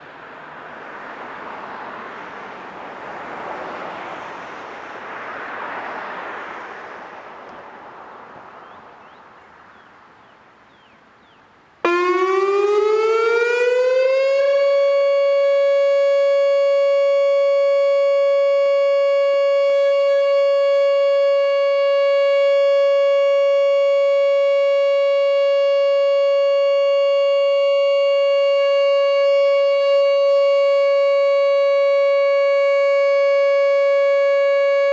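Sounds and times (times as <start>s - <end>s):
outdoor warning siren steady tone: 11.8s - 34.9s.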